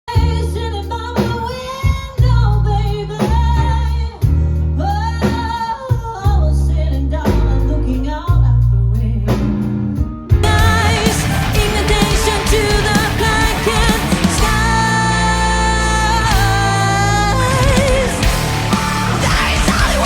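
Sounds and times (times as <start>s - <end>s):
guitar and bass: 0.1s - 1.6s, 2.2s - 20.0s
person singing: 10.4s - 20.0s.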